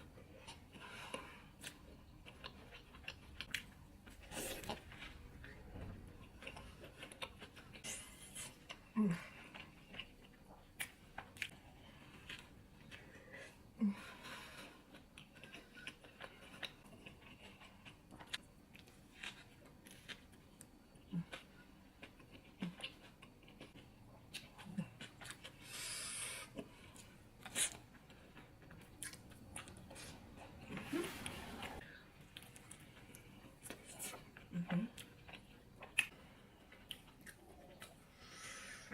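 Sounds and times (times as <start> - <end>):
person chewing food: 0.0 - 38.8.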